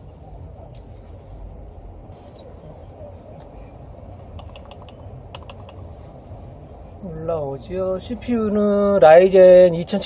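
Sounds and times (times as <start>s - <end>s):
computer fans humming: 0.0s - 10.0s
keyboard key clicks: 4.3s - 5.8s.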